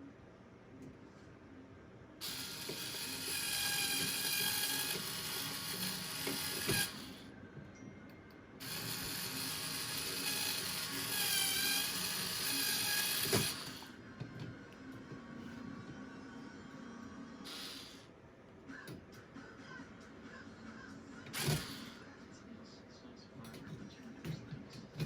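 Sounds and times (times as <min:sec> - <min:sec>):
electric drill running: 0:02.2 - 0:07.2, 0:08.6 - 0:14.0, 0:17.4 - 0:18.1, 0:21.3 - 0:22.0.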